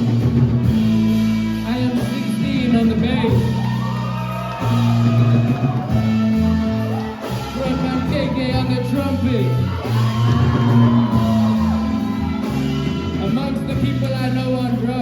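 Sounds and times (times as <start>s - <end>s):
live rock band playing: 0.0s - 15.0s
sustained bass notes: 0.0s - 15.0s
person singing: 5.0s - 14.8s.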